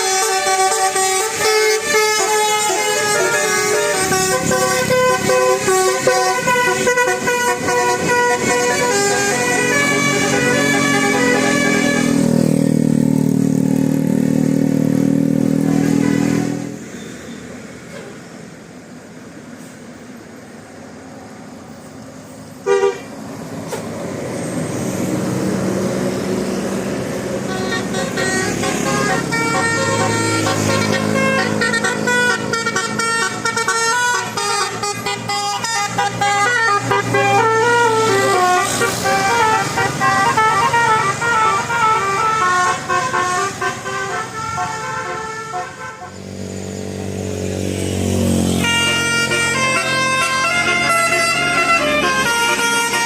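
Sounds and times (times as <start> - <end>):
musical air horn: 0.0 - 12.6, 15.6 - 16.9, 22.6 - 23.1, 27.2 - 46.2, 48.5 - 53.0.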